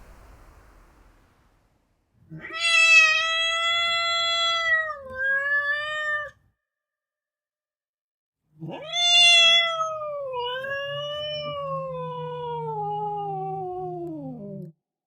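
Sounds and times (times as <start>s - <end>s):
cat meowing long: 2.3s - 6.4s, 8.6s - 14.7s.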